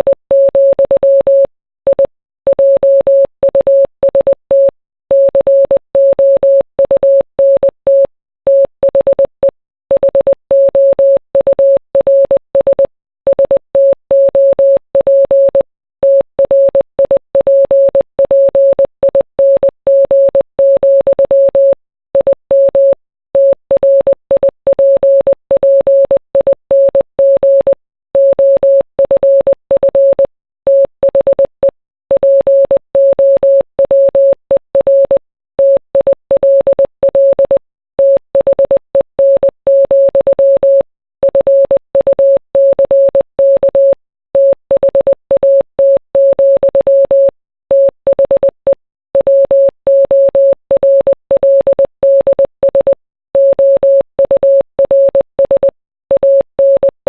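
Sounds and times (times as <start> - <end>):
morse code beeps: 32.2 - 57.0.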